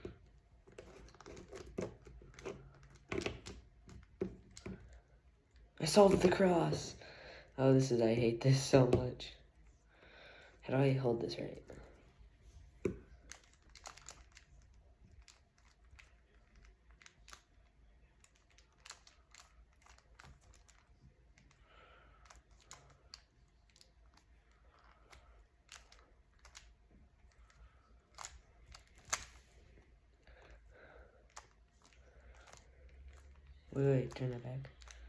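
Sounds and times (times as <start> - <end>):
low room hum: 0.0 - 35.0
puzzle cube plastic clicks: 12.8 - 21.6, 22.2 - 30.6.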